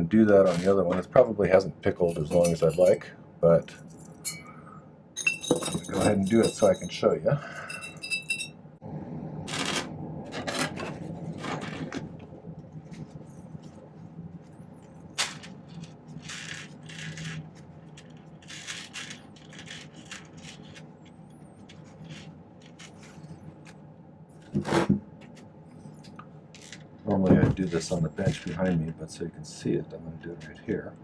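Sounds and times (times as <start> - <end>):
tools scraping and clinking: 0.4 - 1.0, 2.0 - 3.1, 3.8 - 4.6, 5.2 - 7.0, 7.6 - 8.6
tools clattering: 2.1 - 3.0, 5.2 - 7.0, 7.6 - 8.5.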